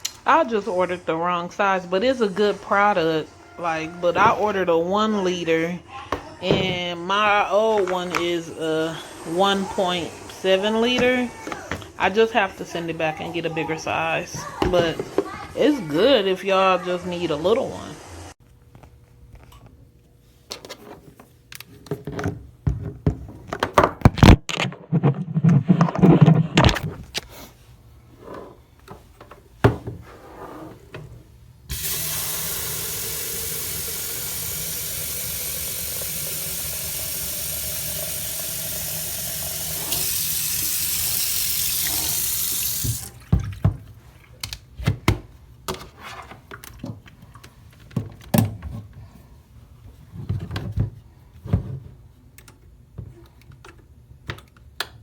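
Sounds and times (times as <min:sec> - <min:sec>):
knocks and clatter of handling: 0:20.5 - 0:27.2, 0:50.0 - 0:54.5
water running from a tap: 0:31.7 - 0:43.2.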